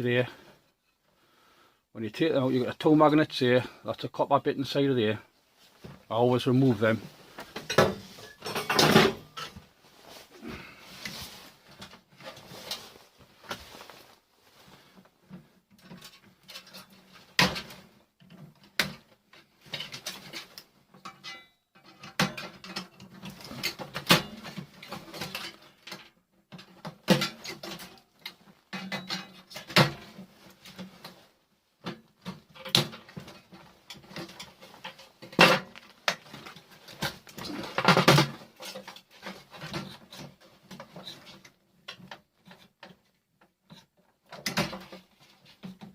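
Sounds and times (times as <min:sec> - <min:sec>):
metal parts and tools clinking: 0:07.6 - 0:09.6, 0:15.8 - 0:17.7, 0:19.7 - 0:30.2.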